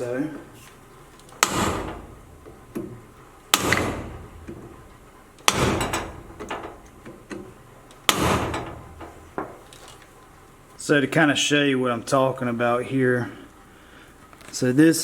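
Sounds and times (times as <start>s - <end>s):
hammer striking chisel on steel: 1.4s - 4.8s, 5.4s - 7.5s, 8.1s - 9.6s.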